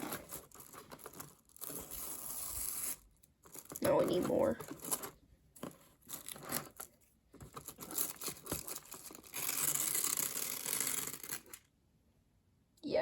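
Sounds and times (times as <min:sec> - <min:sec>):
tearing or scraping noise: 0:00.0 - 0:05.2, 0:07.6 - 0:11.6
packaging crinkling and rustling: 0:00.0 - 0:11.6.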